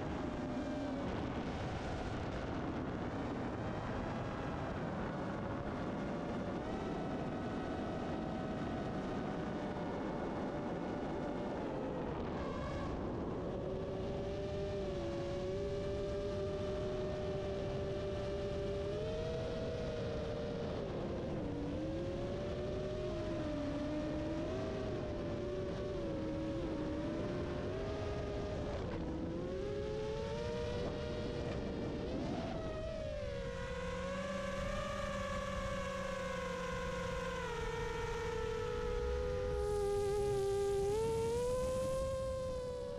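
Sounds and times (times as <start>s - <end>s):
drone motors whining: 28.7s - 42.9s.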